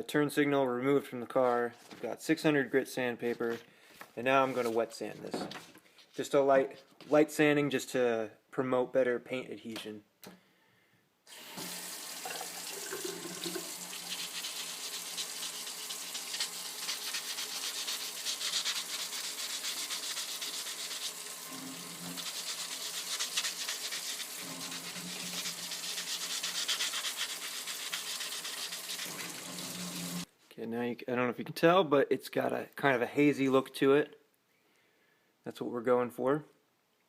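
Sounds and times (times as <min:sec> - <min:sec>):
wet sanding plastic: 0:13.5 - 0:30.3.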